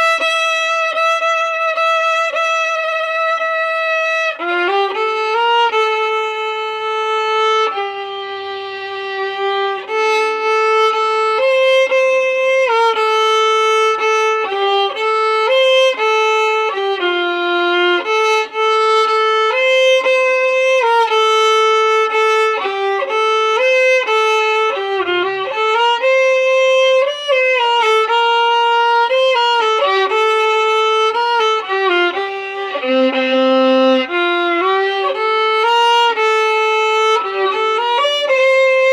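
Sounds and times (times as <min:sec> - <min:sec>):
violin melody: 0:00.0 - 0:38.9.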